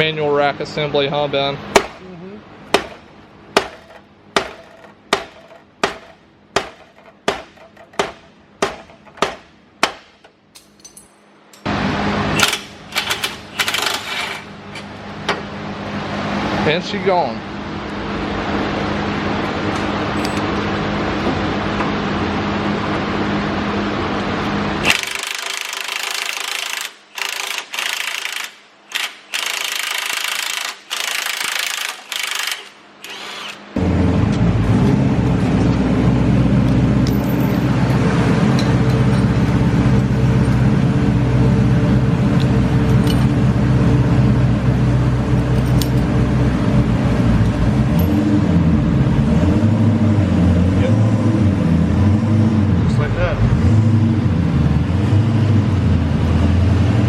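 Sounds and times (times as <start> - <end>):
impact wrench bursts: 24.8 - 33.6.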